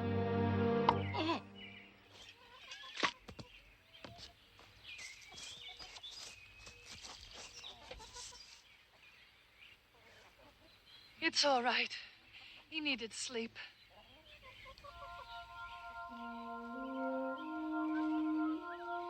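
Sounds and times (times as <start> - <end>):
soft music: 0.0 - 1.9, 15.2 - 19.0
birds chirping: 0.8 - 11.6, 12.2 - 19.0.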